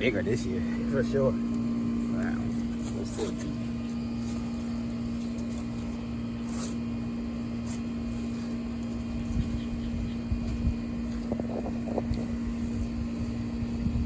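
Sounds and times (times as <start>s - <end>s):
low machine hum: 0.0s - 14.0s.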